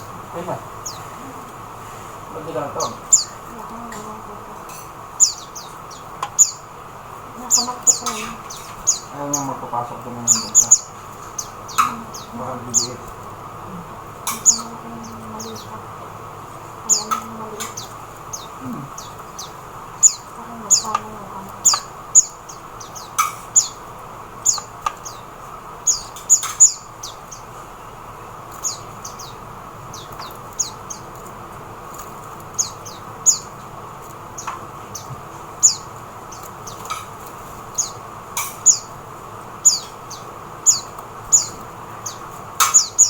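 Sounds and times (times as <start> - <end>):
steady hiss: 0.0 - 43.0
high thin bird chirps: 2.8 - 6.7, 7.4 - 9.6, 10.2 - 13.2, 14.1 - 15.8, 16.6 - 27.6, 31.9 - 33.7, 34.3 - 39.0, 39.6 - 43.0.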